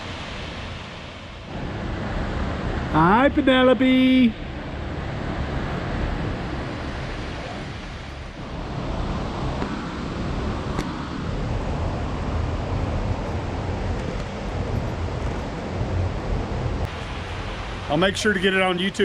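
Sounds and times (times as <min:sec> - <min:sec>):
waterfall rushing: 0:16.9 - 0:19.0.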